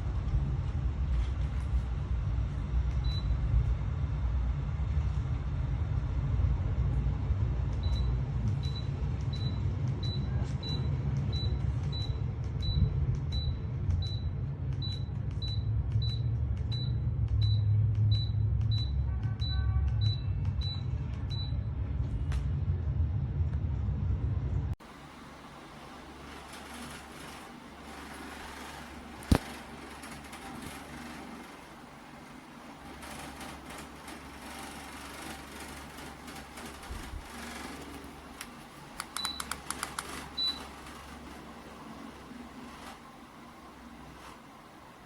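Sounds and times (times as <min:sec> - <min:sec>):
low steady vehicle rumble: 0:00.0 - 0:45.0
short high beeps: 0:39.2 - 0:39.6.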